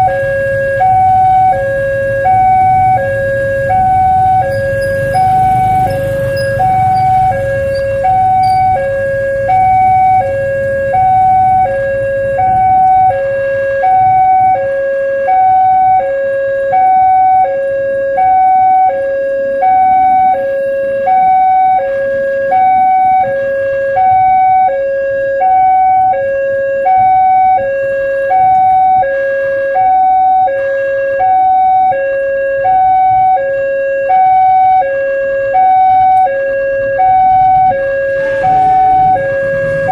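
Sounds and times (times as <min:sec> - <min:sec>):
two-tone level crossing alarm: 0:00.0 - 0:39.9
low rumble: 0:36.8 - 0:39.9.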